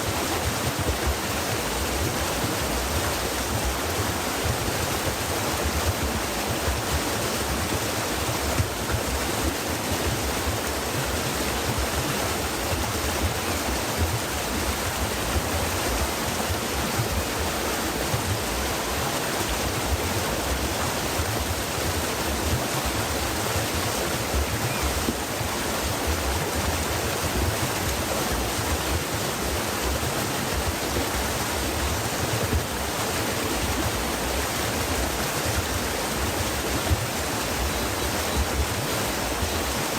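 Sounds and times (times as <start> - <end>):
stream water flowing and splashing: 0.0 - 39.9.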